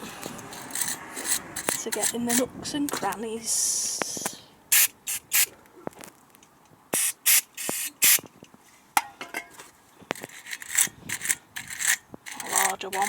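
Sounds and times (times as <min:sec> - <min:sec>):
aerosol spray hissing: 0:04.7 - 0:05.5, 0:07.0 - 0:08.2.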